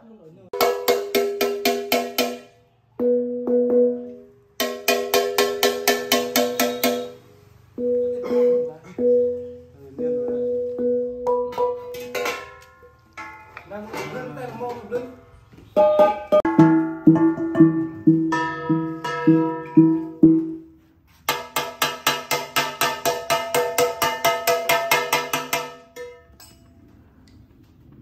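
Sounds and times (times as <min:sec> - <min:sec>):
bronze gongs ringing: 0:03.0 - 0:13.6, 0:15.8 - 0:20.6.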